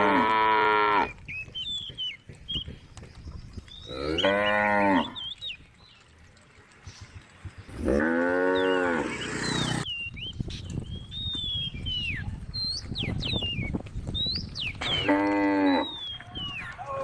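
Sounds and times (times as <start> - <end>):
cow mooing: 0.0 - 1.1, 3.9 - 5.2, 7.8 - 9.8
birds chirping: 0.0 - 17.0.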